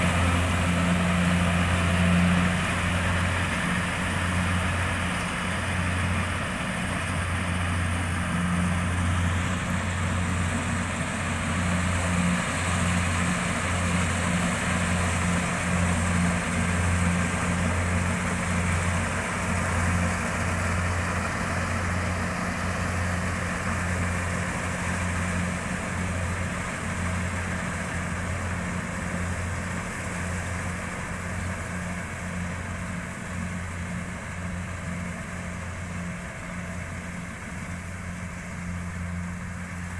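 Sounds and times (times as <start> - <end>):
machinery noise: 0.0 - 31.3
combine harvester engine hum: 0.0 - 39.9.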